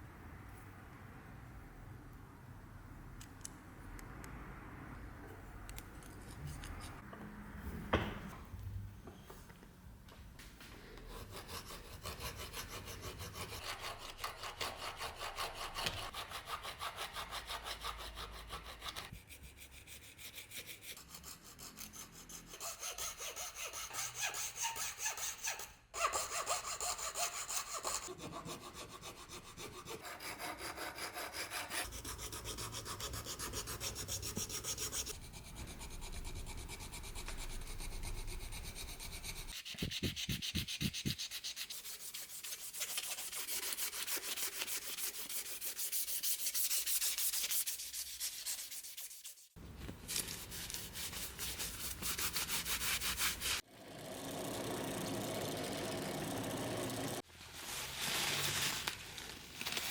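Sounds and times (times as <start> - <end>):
hand saw cutting wood: 11.1 - 36.4, 37.0 - 49.2.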